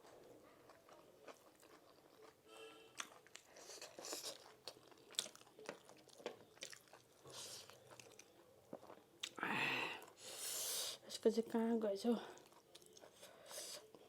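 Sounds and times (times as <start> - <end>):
chewing food: 0.0 - 9.4, 12.2 - 14.0.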